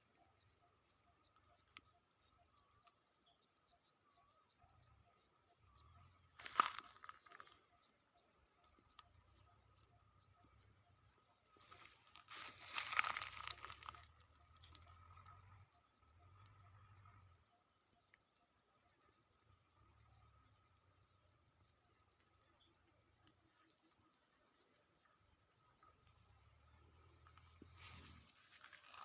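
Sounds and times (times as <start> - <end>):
insects droning: 0.0 - 29.0
dry vegetation rustling: 6.4 - 7.5, 11.5 - 14.9, 27.3 - 29.0.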